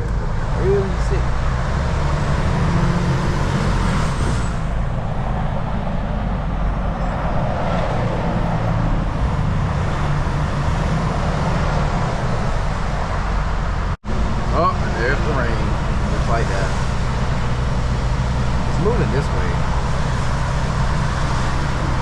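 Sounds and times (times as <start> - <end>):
diesel engine rumble: 0.0 - 22.0
road noise: 0.0 - 22.0
surrounding traffic: 0.0 - 22.0.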